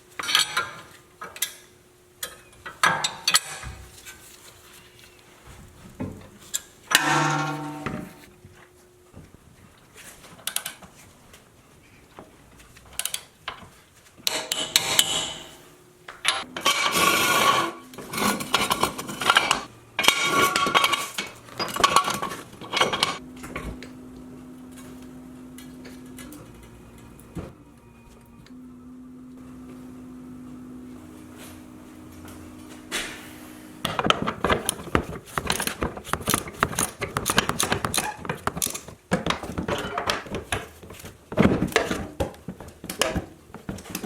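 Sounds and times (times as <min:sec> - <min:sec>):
faint steady hum: 0:03.6 - 0:35.2.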